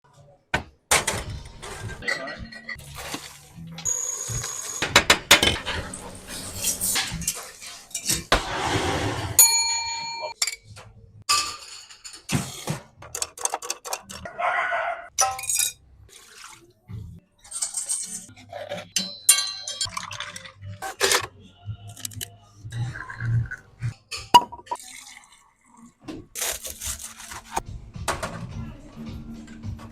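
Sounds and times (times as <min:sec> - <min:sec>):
glasses and dishes clinking: 0:02.0 - 0:02.8, 0:15.2 - 0:15.8, 0:17.5 - 0:20.6, 0:24.1 - 0:24.8
cutlery rattling: 0:13.0 - 0:14.2, 0:17.5 - 0:20.0.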